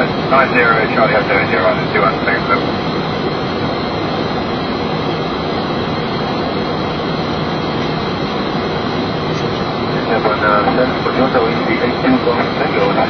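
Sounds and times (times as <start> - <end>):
airflow and jet engine rush: 0.0 - 13.0.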